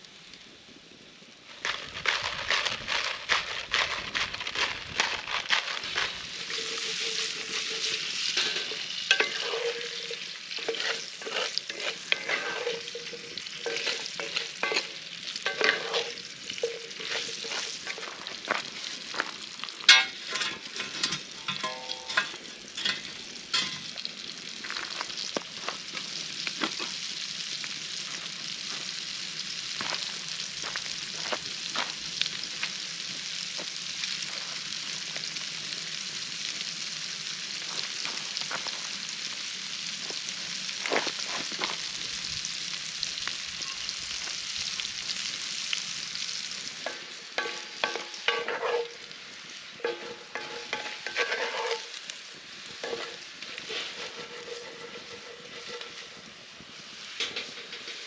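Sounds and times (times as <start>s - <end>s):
food sizzling in a pan: 0.0s - 58.0s
utensil scraping and clicking on pan: 1.6s - 18.3s, 19.9s - 23.9s, 46.8s - 49.0s, 49.8s - 52.0s, 52.8s - 56.3s, 57.2s - 58.0s.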